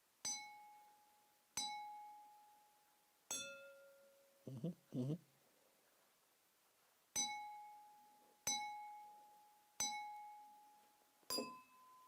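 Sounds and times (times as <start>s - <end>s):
struck bell ringing: 11.3s - 12.0s.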